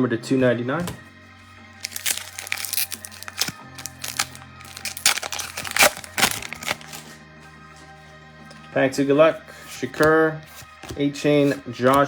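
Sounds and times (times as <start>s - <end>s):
background music: 0.0s - 12.0s
foil wrapper crinkling and tearing: 1.8s - 7.1s.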